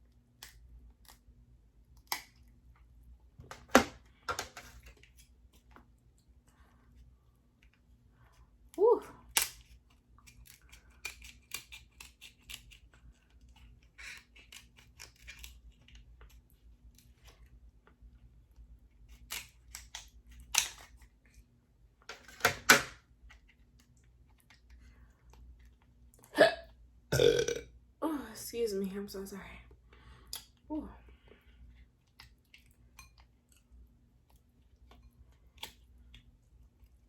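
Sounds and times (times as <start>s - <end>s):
crab shell clicks and crackles: 0.0s - 2.8s, 8.6s - 21.4s, 32.0s - 36.9s
shell snapping crunches: 1.9s - 2.5s, 9.3s - 13.0s, 19.1s - 21.1s.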